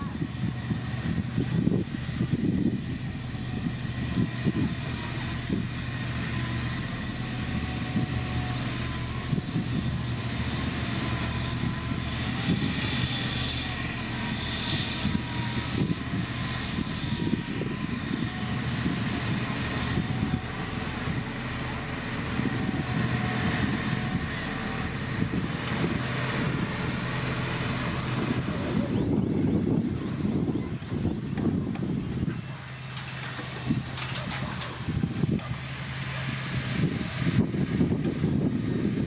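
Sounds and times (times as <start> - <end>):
heavy diesel machinery running: 0.0 - 39.0.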